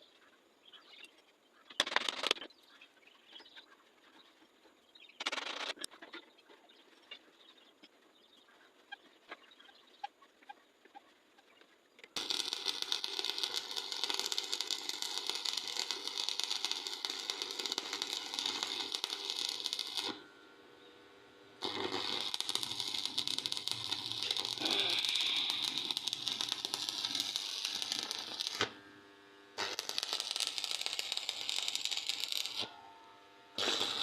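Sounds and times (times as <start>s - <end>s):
arc welding crackle: 12.2s - 34.0s.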